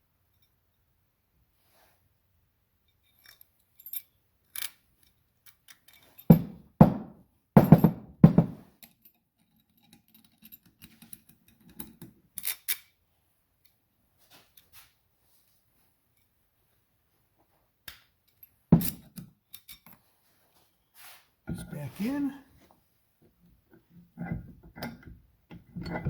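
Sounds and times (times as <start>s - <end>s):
small metallic clinks: 2.8s - 6.6s, 8.7s - 13.0s, 18.1s - 20.0s, 24.2s - 26.0s
heavy metal knocks: 6.3s - 8.6s
metal vise parts clicking: 24.2s - 26.0s.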